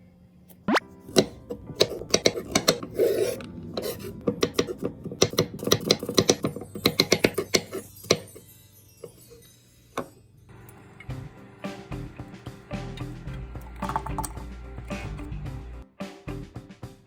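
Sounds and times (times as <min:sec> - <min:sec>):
kitchen utensils clicking and scraping: 0:01.1 - 0:10.8.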